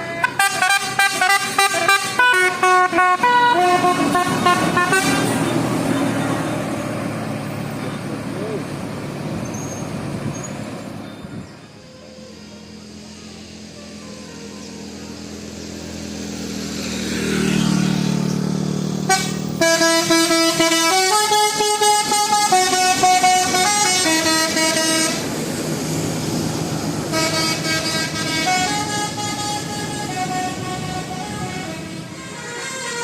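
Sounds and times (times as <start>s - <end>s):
multi-tone musical horn: 0.0s - 5.5s, 19.0s - 25.3s, 27.1s - 33.0s
heavy vehicle engine: 0.0s - 33.0s.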